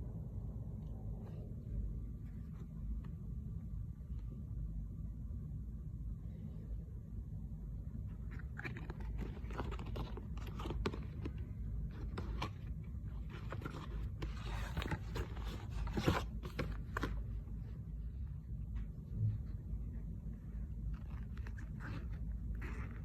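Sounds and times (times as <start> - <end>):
steady low hum: 0.0 - 23.0
packaging crinkling and tearing: 8.3 - 17.2.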